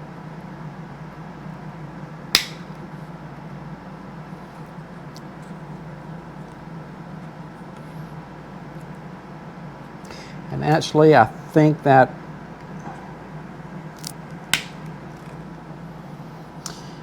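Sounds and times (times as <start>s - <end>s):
steady low hum: 0.0s - 17.0s
plastic snap: 2.4s - 2.7s.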